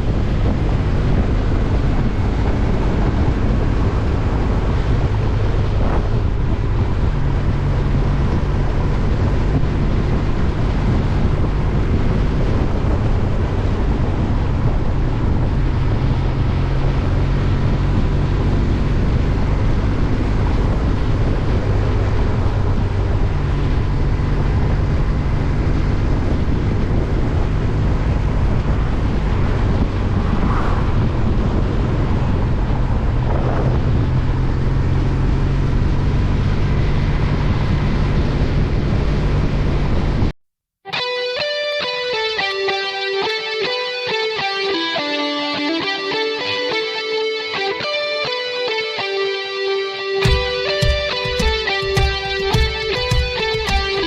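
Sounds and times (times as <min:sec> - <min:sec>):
wind rushing over microphone: 0:00.0 - 0:40.4
motorcycle engine running: 0:50.2 - 0:54.0.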